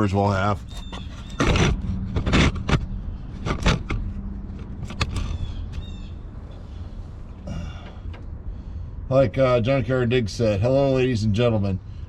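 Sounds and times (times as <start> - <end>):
steady low hum: 0.0 - 12.0
tools clicking and knocking: 0.6 - 5.4.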